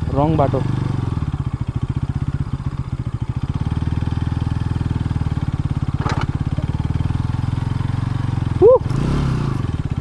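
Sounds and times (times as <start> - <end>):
motorcycle engine chugging: 0.0 - 10.0.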